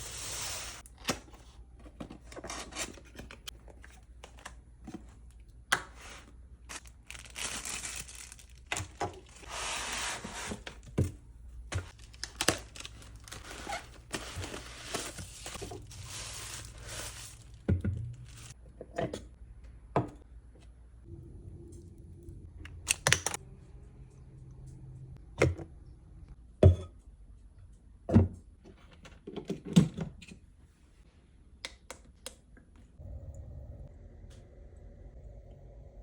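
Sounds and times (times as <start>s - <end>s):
packaging tearing and crinkling: 6.7s - 10.3s, 11.9s - 17.6s.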